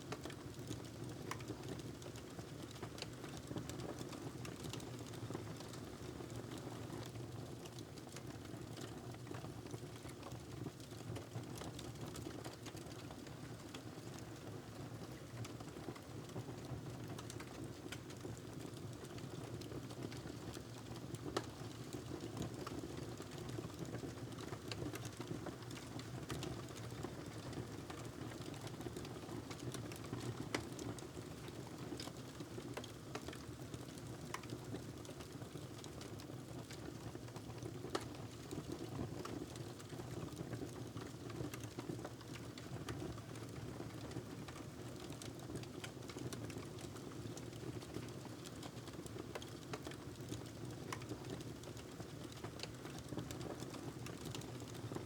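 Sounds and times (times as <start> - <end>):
wood fire crackling and popping: 17.0 - 55.0.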